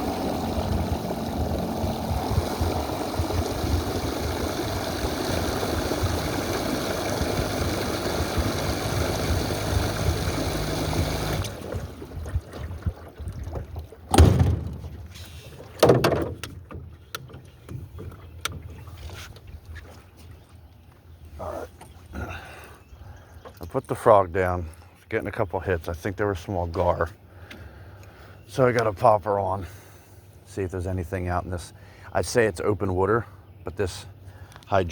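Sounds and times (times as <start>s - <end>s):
boat motor running: 0.0s - 22.7s
hollow knocks on boat: 12.3s - 15.1s, 15.7s - 19.4s.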